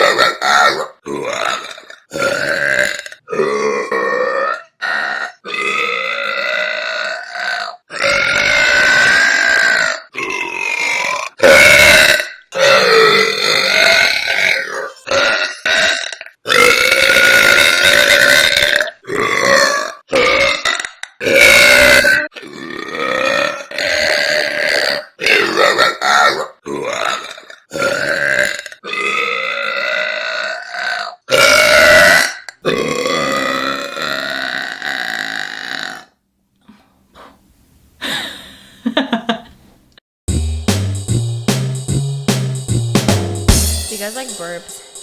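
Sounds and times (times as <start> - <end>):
woman burping: 0.0 - 7.7, 12.1 - 36.1.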